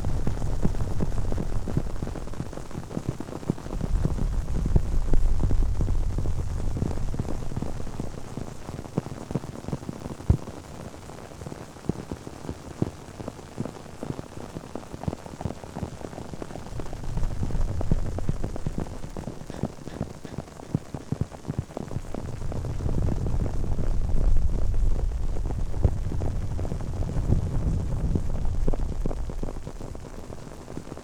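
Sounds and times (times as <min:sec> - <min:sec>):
crackle of small pops and ticks: 0:00.0 - 0:31.0
low rumble: 0:16.5 - 0:20.8, 0:21.9 - 0:30.7.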